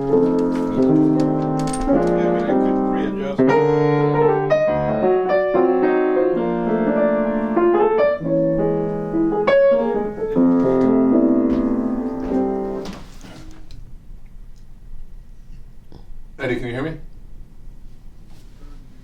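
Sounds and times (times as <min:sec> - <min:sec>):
jazz piano playing: 0:00.0 - 0:13.6.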